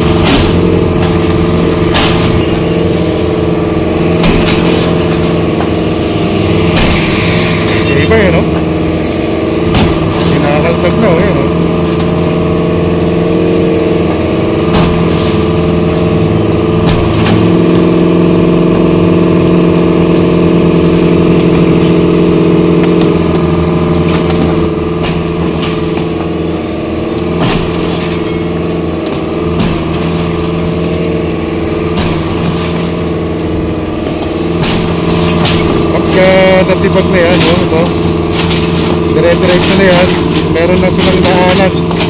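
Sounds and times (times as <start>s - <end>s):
excavator diesel engine running: 0.0s - 42.0s
concrete block walls breaking: 27.3s - 28.5s, 34.0s - 42.0s.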